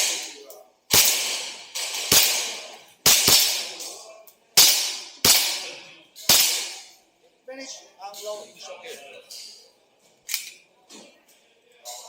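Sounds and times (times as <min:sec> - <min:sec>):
airsoft pistol shots: 0:00.0 - 0:03.8, 0:04.6 - 0:06.8.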